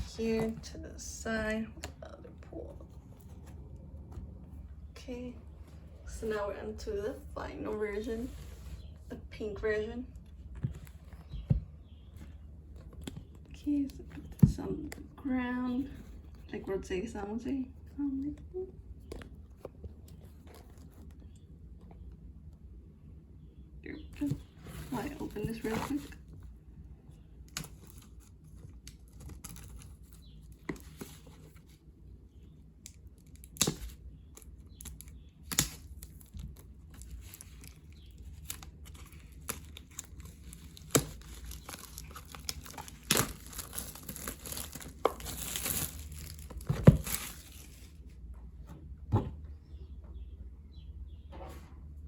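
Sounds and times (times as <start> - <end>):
plastic packaging crinkling: 33.2 - 48.0.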